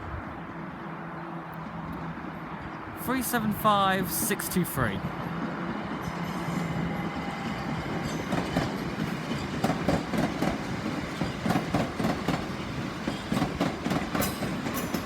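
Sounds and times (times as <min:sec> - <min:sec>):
electric train humming: 0:01.6 - 0:15.0
train wheels clattering over rail joints: 0:06.1 - 0:15.0.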